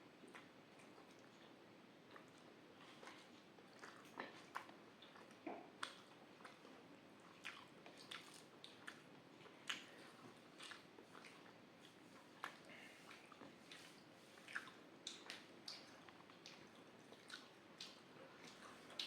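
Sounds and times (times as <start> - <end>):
soft chewing: 0.1 - 19.0
wet lip smacks and clicks: 9.7 - 9.9.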